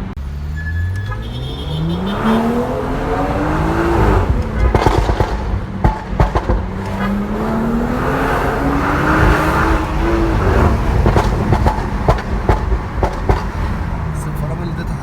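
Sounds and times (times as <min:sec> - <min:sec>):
car engine revving: 0:00.0 - 0:15.0
exhaust crackles and pops: 0:03.5 - 0:15.0.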